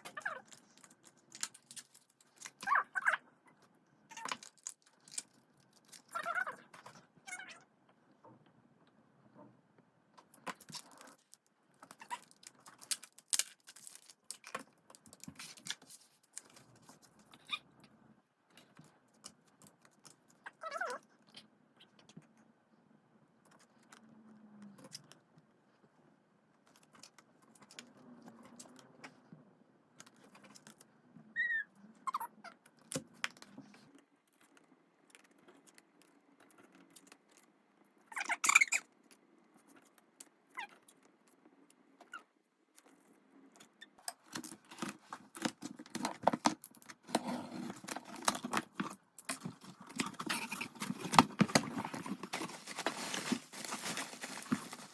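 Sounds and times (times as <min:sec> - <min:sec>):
plastic and card rustling: 0:00.0 - 0:03.2, 0:04.1 - 0:07.0, 0:10.3 - 0:17.6, 0:44.1 - 0:54.9.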